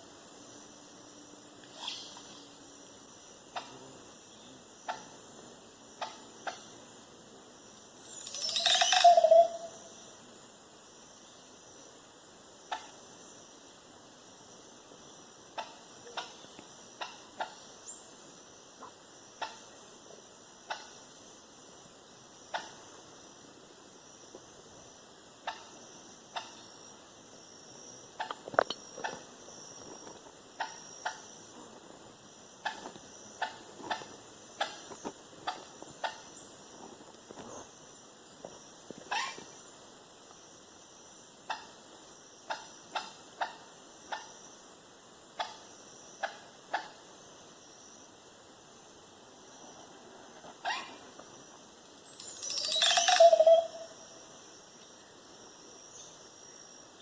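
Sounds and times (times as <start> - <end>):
high-pitched insect drone: 8.0 - 10.2, 50.6 - 55.1
pulsing chirr: 8.3 - 9.9, 52.1 - 54.3.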